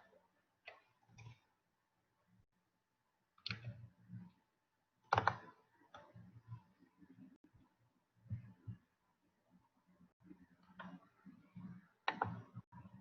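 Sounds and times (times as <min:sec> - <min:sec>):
computer mouse and keyboard clicks: 0:00.6 - 0:01.5, 0:03.4 - 0:04.4, 0:05.1 - 0:06.7, 0:10.6 - 0:12.6.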